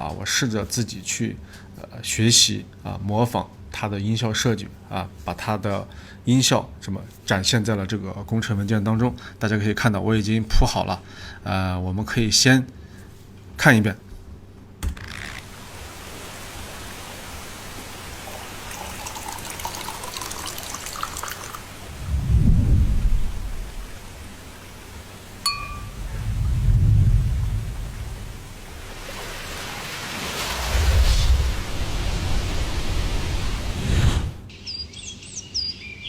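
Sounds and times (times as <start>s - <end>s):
rain-like ambient hiss: 0.0s - 35.0s
deep windy whooshes: 21.9s - 24.0s, 25.8s - 29.0s
rising rush of noise: 21.9s - 24.2s, 25.5s - 34.5s.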